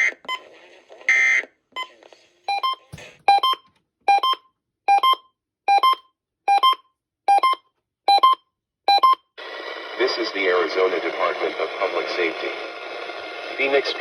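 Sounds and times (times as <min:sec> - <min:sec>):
electronic beeps: 0:02.5 - 0:09.2.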